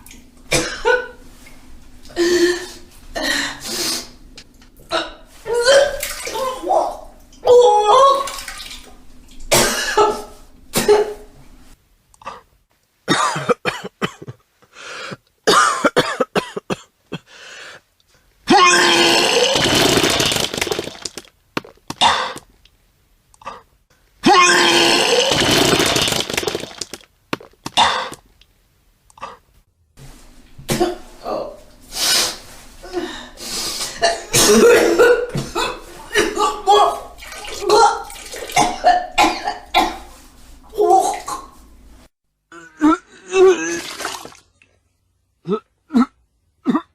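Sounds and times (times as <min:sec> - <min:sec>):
person retching and gagging: 0:18.5 - 0:22.5, 0:23.4 - 0:28.3, 0:42.5 - 0:44.6, 0:45.4 - 0:46.9.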